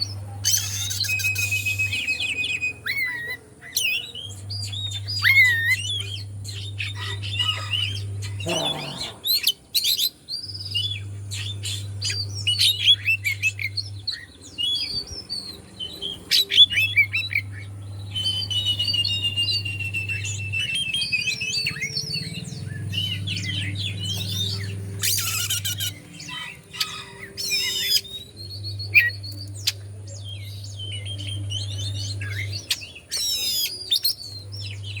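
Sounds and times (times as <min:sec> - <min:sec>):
bird singing: 0:00.0 - 0:35.0.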